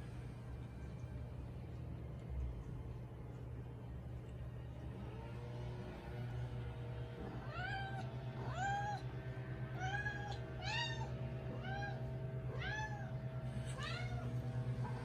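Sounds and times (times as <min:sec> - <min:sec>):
cat meowing: 0:07.4 - 0:09.1, 0:09.8 - 0:14.3.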